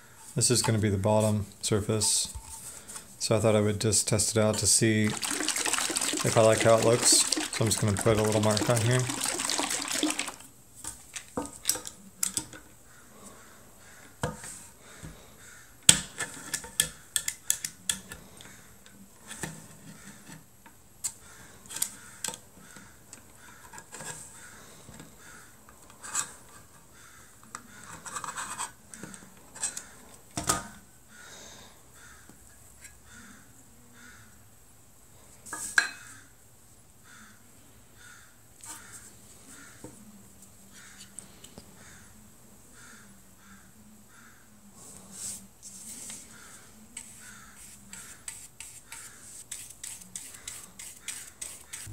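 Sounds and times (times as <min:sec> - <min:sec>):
soft rubbing on wood: 0:44.8 - 0:51.9.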